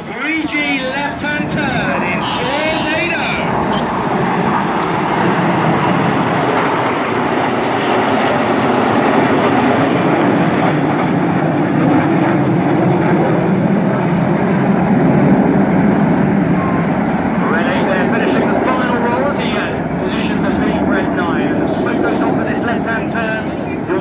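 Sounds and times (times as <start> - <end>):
jets flying over: 0.0 - 24.0.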